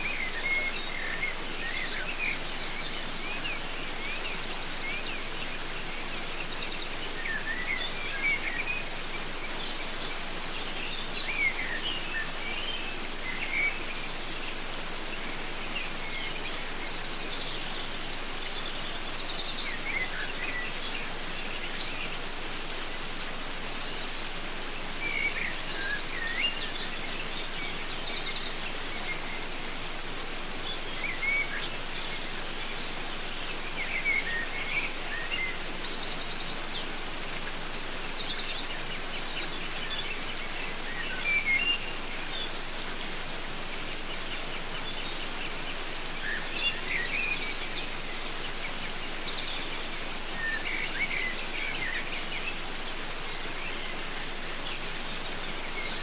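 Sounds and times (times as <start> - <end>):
waterfall rushing: 0.0 - 56.0.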